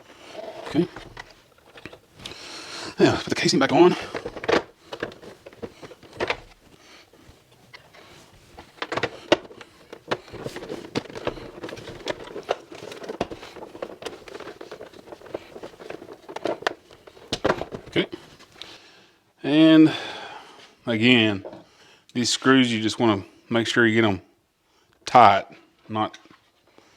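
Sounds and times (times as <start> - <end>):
soft rustling: 0.0 - 18.6
hard plastic parts clicking: 0.4 - 6.7, 7.6 - 18.7.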